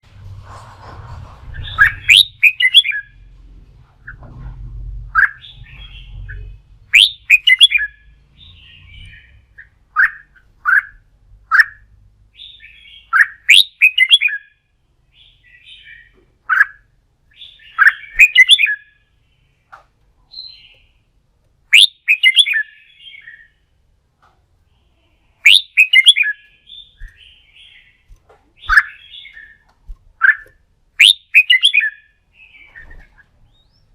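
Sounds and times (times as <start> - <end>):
bird whistled song: 1.6 - 3.2, 5.2 - 14.6, 15.2 - 19.0, 21.7 - 23.6, 25.4 - 28.0, 28.6 - 29.6, 30.2 - 33.9.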